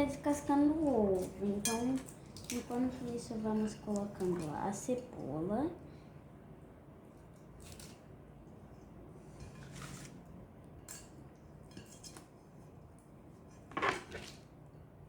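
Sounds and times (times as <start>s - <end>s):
utensils and dishes clinking: 1.2s - 4.6s.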